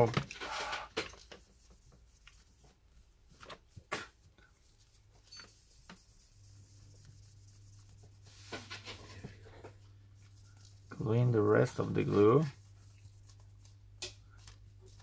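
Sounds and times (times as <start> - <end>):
low steady hum: 1.1 - 15.0.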